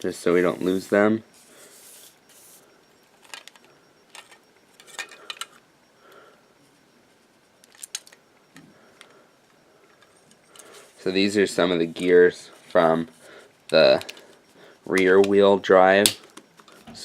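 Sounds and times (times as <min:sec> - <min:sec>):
small plastic parts clicking: 0:07.6 - 0:08.2.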